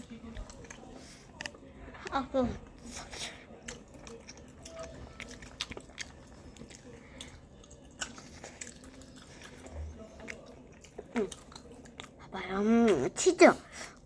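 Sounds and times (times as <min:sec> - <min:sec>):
person chewing and biting: 0:03.6 - 0:12.2.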